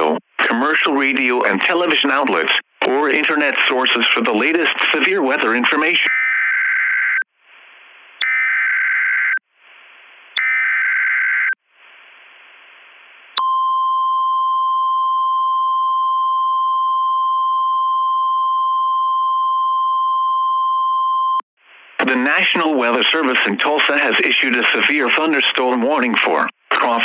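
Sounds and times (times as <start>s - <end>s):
piercing high alarm tone: 8.2s - 9.4s, 10.4s - 11.6s
screechy digital data tones: 8.2s - 9.4s, 10.4s - 11.6s.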